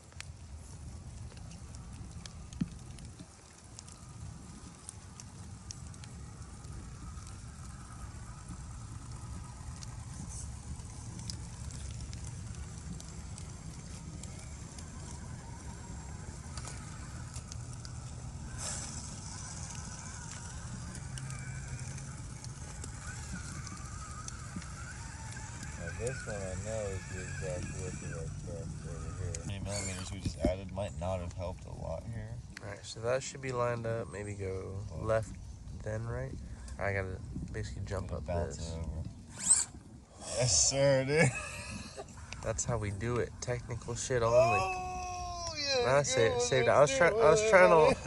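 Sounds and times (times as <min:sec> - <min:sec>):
steady low rumble: 0:00.0 - 0:33.3
faint motor whine: 0:00.0 - 0:48.0
tyres crackling on dirt and rocks: 0:00.0 - 0:48.0.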